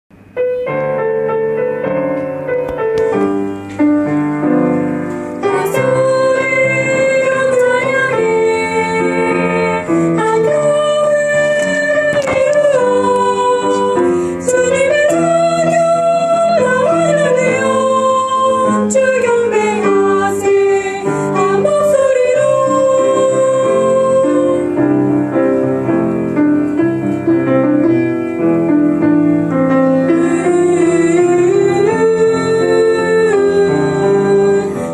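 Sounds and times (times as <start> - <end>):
piano accompaniment: 0.1 - 34.9
soprano singing with vibrato: 5.4 - 25.0, 30.0 - 34.9.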